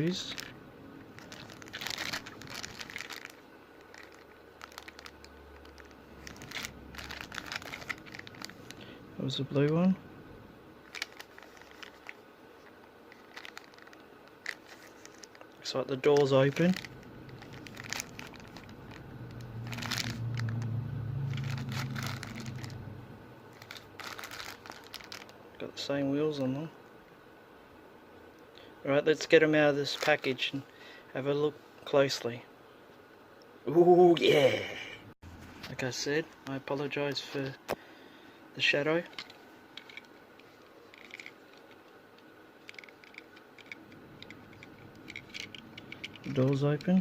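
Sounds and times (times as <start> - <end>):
low steady hum: 0.0 - 47.0
plastic packaging crinkling: 0.1 - 8.9, 10.8 - 25.4, 39.1 - 41.8, 42.6 - 47.0.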